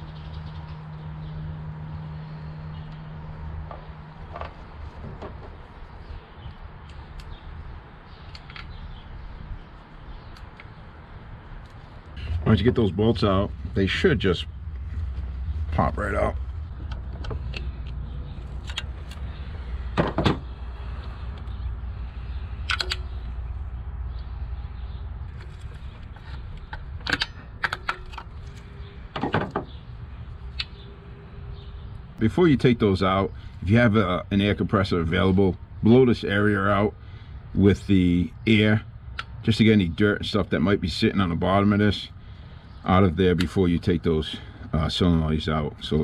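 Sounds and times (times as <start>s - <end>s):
low hum and rumble: 0.0s - 46.0s
tools and parts clicking and knocking: 8.2s - 8.8s, 22.7s - 23.2s, 25.3s - 29.8s.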